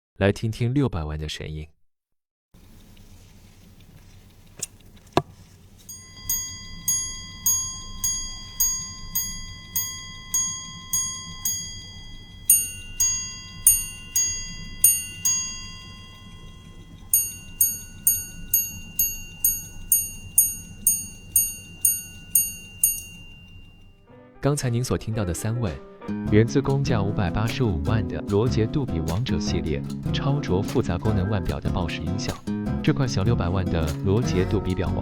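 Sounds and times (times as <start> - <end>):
minute repeater striking gongs: 5.9 - 23.8.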